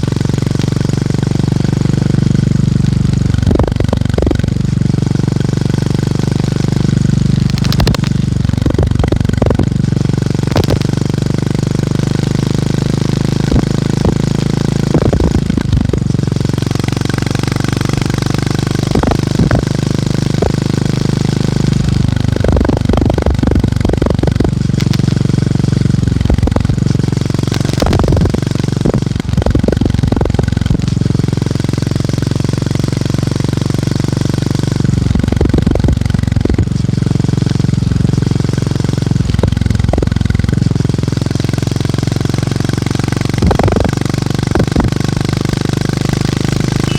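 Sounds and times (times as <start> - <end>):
motorcycle engine thumping: 0.0 - 46.9.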